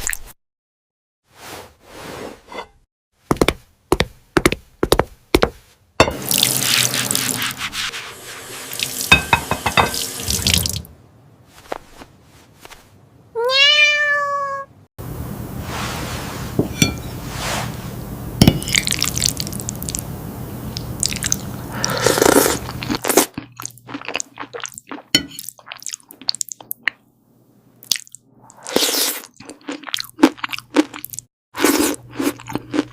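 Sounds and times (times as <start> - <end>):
cat meowing: 13.4 - 14.7.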